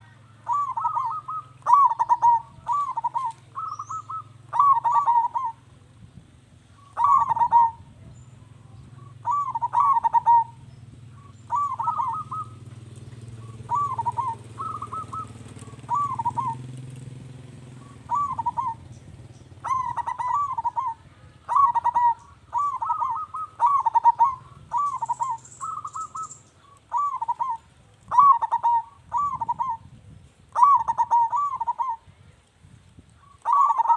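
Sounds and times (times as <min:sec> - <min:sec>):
dove cooing: 0:00.0 - 0:05.7, 0:06.8 - 0:29.9, 0:30.5 - 0:32.2, 0:33.2 - 0:33.9.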